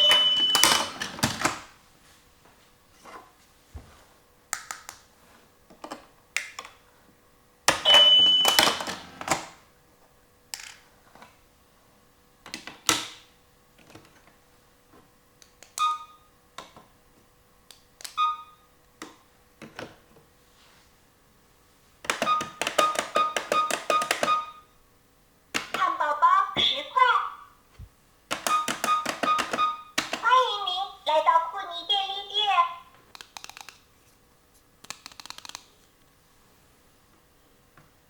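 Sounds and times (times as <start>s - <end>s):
electronic blips from toy buttons: 0.0s - 0.9s, 7.8s - 8.9s, 15.8s - 16.2s, 18.1s - 18.6s, 22.1s - 24.6s, 28.4s - 30.3s
plastic toy pieces clicking: 33.2s - 33.8s, 34.8s - 35.7s.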